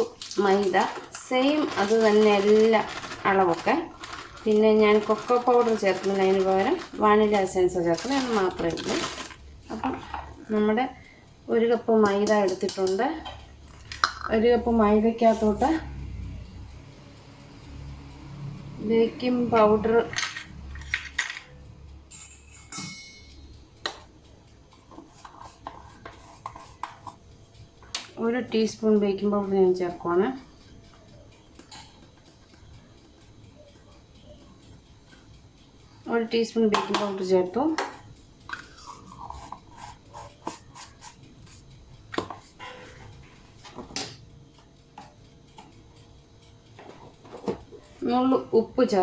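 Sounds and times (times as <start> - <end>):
spoon and containers clicking: 0.0 - 10.4, 12.0 - 14.4, 20.1 - 24.1, 36.7 - 41.4
spoon clinking on containers: 12.0 - 14.4, 20.0 - 24.1, 36.7 - 39.7.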